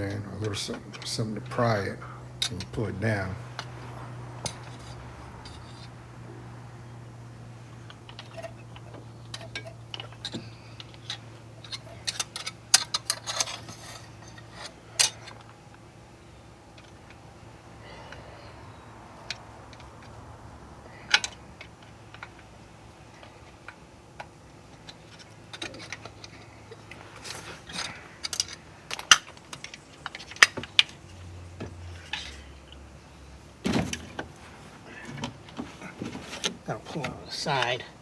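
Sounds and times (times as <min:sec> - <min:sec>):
heavy metal clunk: 0:33.6 - 0:36.7.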